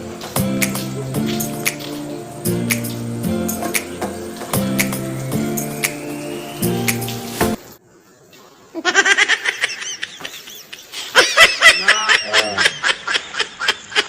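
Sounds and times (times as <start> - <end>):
background music: 0.0 - 7.8
high-pitched laughter: 8.8 - 14.0.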